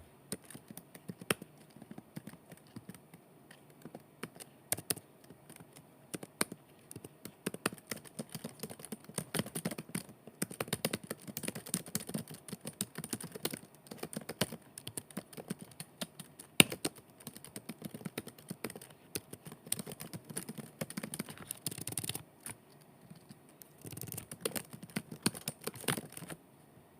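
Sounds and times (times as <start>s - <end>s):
typing on keyboard: 0.3s - 26.4s.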